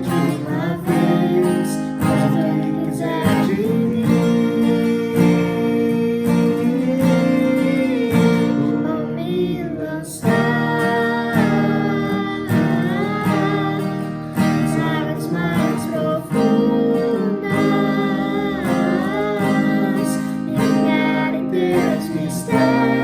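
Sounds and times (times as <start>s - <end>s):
person singing: 0.0s - 23.0s
strummed acoustic guitar: 0.0s - 23.0s.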